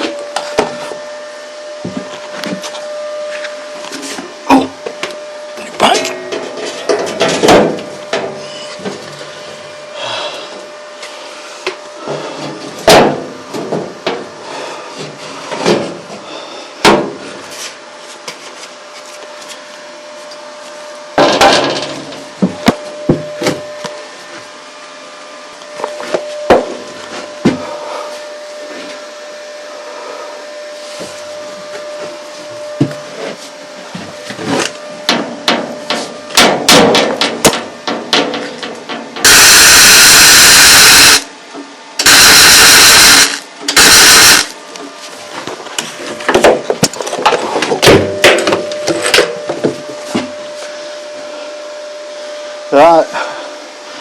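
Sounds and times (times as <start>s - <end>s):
loud harsh noise bursts: 39.2s - 41.3s, 42.0s - 44.6s.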